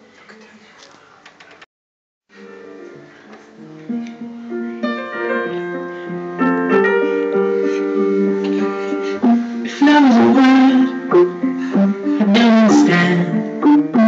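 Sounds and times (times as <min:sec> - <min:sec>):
piano sustained notes: 0:02.3 - 0:14.0.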